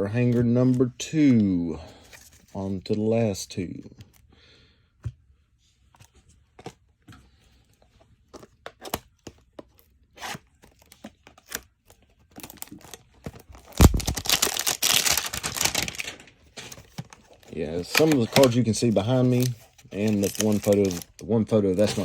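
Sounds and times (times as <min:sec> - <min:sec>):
cards and packaging clicking: 0:08.3 - 0:21.2
cardboard box ripping open: 0:13.6 - 0:16.0.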